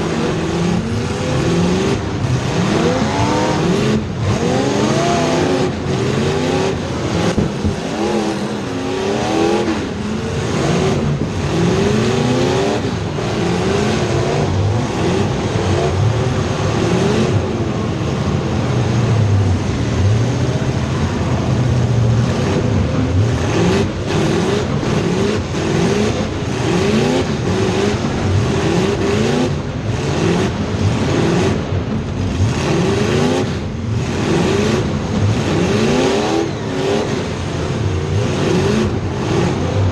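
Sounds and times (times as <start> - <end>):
race car engines revving: 0.0 - 39.9.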